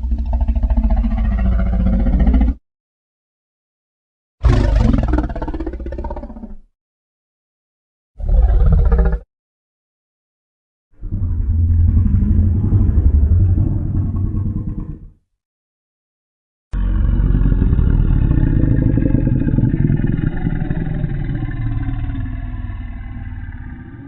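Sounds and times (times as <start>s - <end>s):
deep rumbling monster growl: 0.0s - 2.6s, 4.4s - 6.7s, 8.2s - 9.3s, 11.0s - 15.3s, 16.7s - 24.0s.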